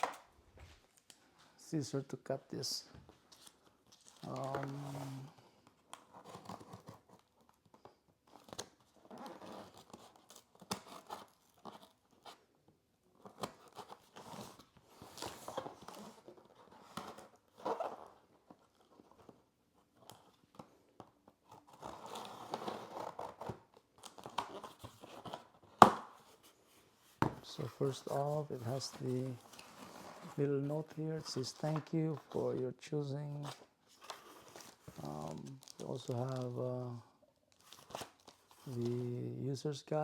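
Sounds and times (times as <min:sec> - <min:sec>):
cardboard box rustling: 0:26.2 - 0:32.6.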